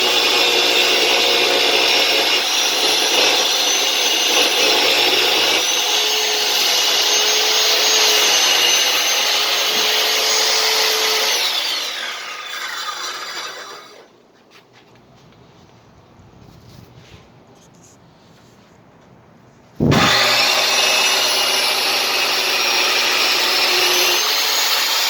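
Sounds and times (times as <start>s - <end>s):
circular saw cutting wood: 0.0s - 14.1s, 19.8s - 25.0s.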